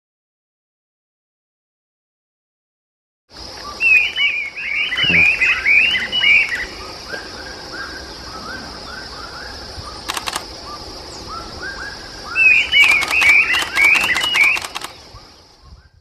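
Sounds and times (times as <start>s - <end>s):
steady high hiss: 3.3s - 16.0s
bird whistling song: 3.6s - 16.0s
rapid clicking bursts: 10.1s - 10.5s, 12.8s - 15.0s.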